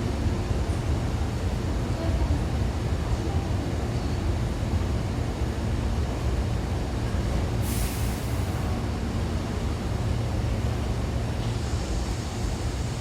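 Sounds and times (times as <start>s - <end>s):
air hiss: 7.6s - 8.7s.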